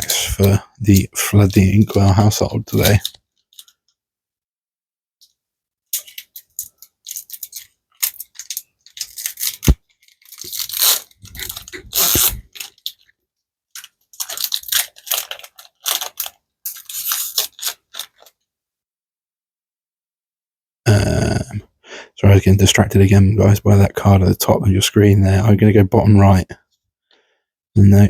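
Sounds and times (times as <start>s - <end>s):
foil wrappers crinkling: 0.0s - 3.8s, 6.0s - 13.2s, 13.8s - 18.4s.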